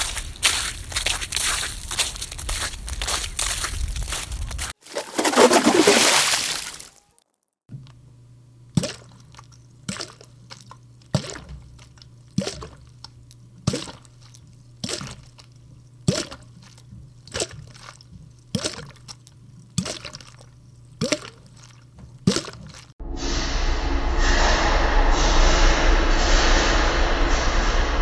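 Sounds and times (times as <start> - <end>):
slush crunching underfoot: 0.0 - 7.0, 13.7 - 23.0.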